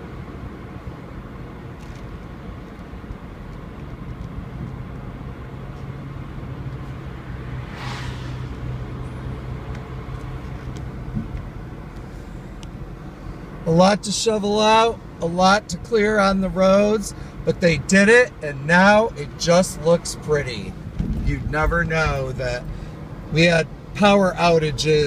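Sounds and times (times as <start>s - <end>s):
car engine and tyre noise: 0.0s - 25.0s
brief hiss: 7.6s - 8.9s.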